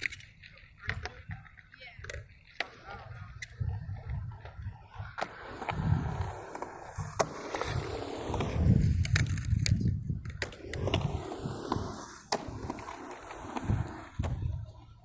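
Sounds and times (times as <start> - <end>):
skateboard clacks: 0.0 - 15.0
skateboard rolling: 0.0 - 15.0
wind rumble on microphone: 3.0 - 15.0.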